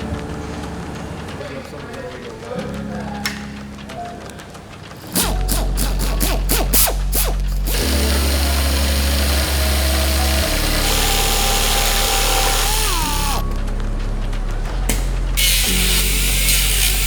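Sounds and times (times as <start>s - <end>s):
background music with deep bass: 2.7s - 17.0s
power tool whirring: 5.1s - 13.4s, 15.4s - 17.0s
ratchet clicks: 5.1s - 13.4s, 15.4s - 17.0s.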